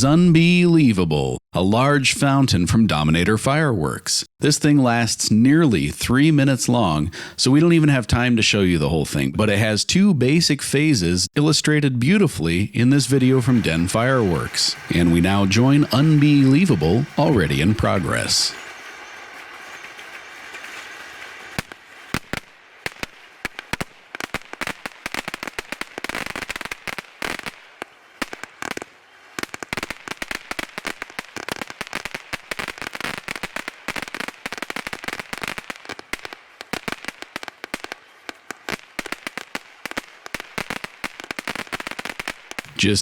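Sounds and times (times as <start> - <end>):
firework fountain hiss: 12.9 - 43.0
firework crackling pops: 13.1 - 42.9.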